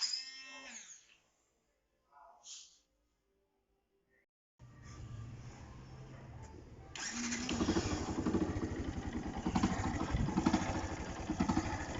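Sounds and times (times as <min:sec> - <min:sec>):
motorcycle engine starting and running: 0:06.9 - 0:11.9.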